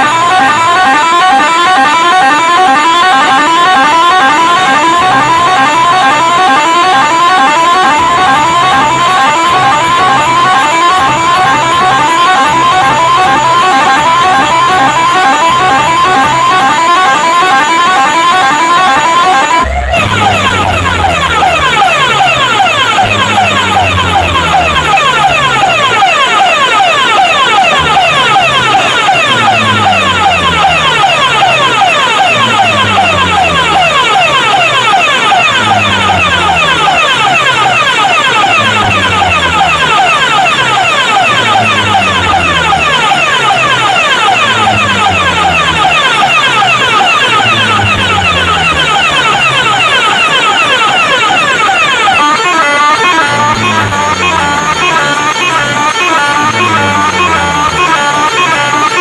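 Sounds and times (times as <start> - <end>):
hard-bass electronic music: 0.0 - 59.0.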